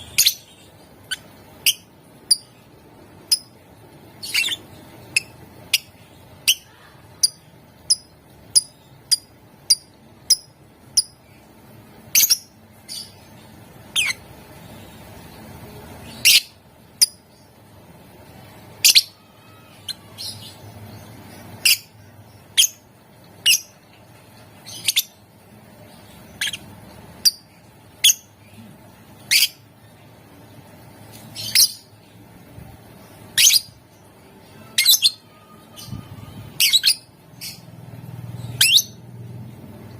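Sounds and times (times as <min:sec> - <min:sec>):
lovebird chirping and squawking: 0:00.0 - 0:02.7, 0:03.3 - 0:03.6, 0:04.2 - 0:11.2, 0:12.1 - 0:13.2, 0:13.9 - 0:14.3, 0:16.0 - 0:17.2, 0:18.8 - 0:23.8, 0:24.6 - 0:25.2, 0:26.1 - 0:28.4, 0:29.2 - 0:29.6, 0:31.4 - 0:31.9, 0:33.3 - 0:33.8, 0:34.7 - 0:37.8, 0:38.4 - 0:39.0.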